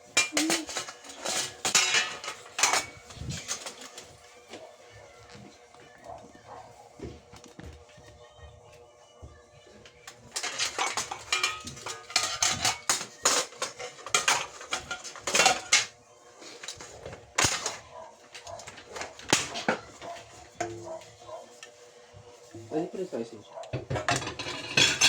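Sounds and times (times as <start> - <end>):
dishes and utensils clinking: 0.0 - 4.7, 10.0 - 21.7, 23.6 - 25.0.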